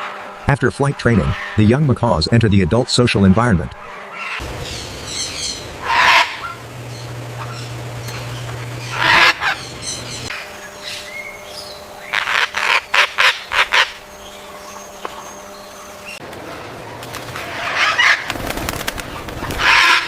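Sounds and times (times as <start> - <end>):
steady low hum: 0.0 - 20.0
macaws squawking: 3.0 - 16.2, 17.3 - 18.4, 19.1 - 20.0.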